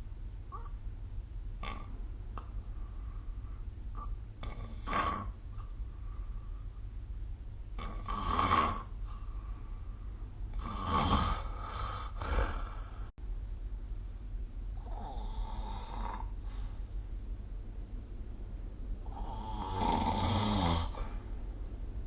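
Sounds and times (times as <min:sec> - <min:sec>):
steady low hum: 0:00.0 - 0:22.0
person snoring: 0:04.4 - 0:05.4, 0:07.8 - 0:09.0, 0:10.5 - 0:13.1, 0:14.8 - 0:16.5, 0:19.0 - 0:21.2.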